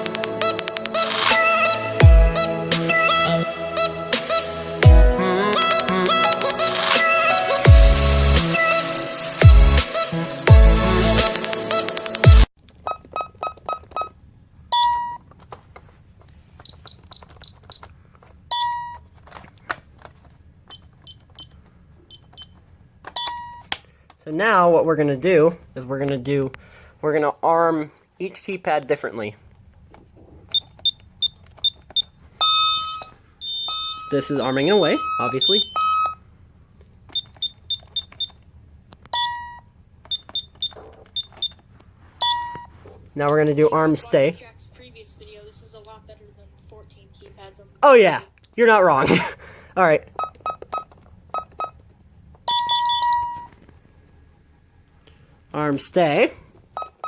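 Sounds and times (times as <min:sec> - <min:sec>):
security keypad beeping: 0:16.7 - 0:17.9, 0:20.7 - 0:22.6, 0:30.5 - 0:36.2, 0:37.1 - 0:38.4, 0:39.1 - 0:41.6, 0:42.2 - 0:42.7, 0:50.2 - 0:51.8, 0:52.5 - 0:53.5, 0:56.8 - 0:57.0
short high keypad beeps: 0:39.2 - 0:41.6, 0:52.5 - 0:53.5.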